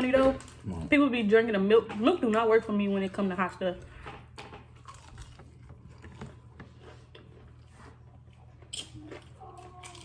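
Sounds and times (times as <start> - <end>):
quiet chewing: 3.8 - 10.0.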